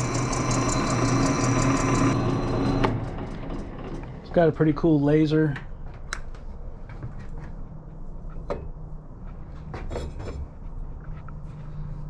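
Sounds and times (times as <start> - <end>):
steady low hum: 0.0 - 3.5
clatter of knocks: 2.9 - 4.3.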